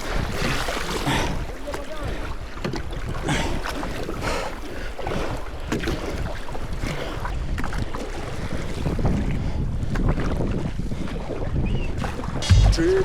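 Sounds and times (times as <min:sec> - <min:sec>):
paddle splashes: 0:00.0 - 0:13.0
wind rumbling on microphone: 0:05.2 - 0:13.0.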